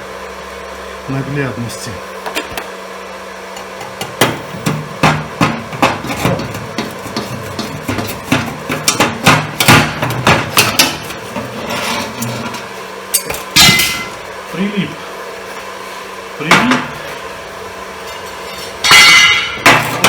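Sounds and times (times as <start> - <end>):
electrode striking steel plate: 3.6 - 11.7, 13.2 - 14.2, 18.8 - 20.0.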